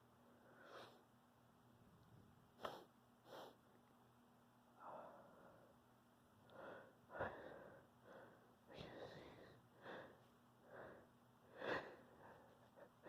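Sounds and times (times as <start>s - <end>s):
person sniffing and sneezing: 2.6s - 3.6s.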